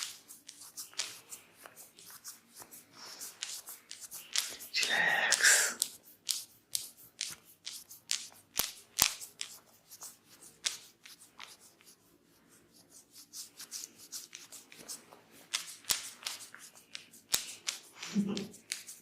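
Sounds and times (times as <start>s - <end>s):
hands snapping and tapping head: 0.0s - 2.3s, 3.3s - 9.6s, 15.5s - 19.0s.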